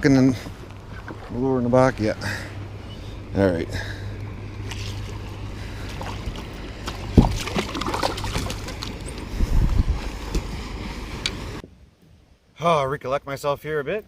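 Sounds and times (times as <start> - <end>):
low rumble: 0.0 - 11.6
waves slapping kayak hull: 4.6 - 11.6
knocks on hull: 7.1 - 8.6.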